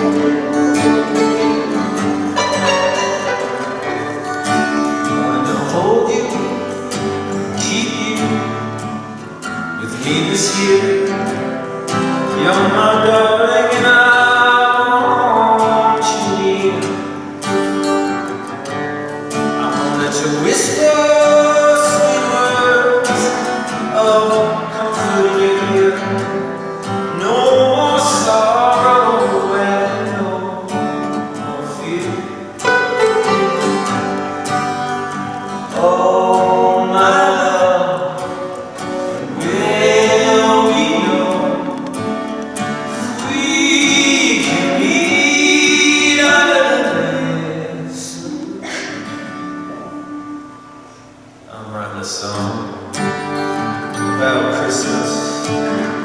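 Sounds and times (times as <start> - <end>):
person singing: 0.0 - 9.0, 19.4 - 50.3
acoustic band plucked strings: 0.0 - 56.0.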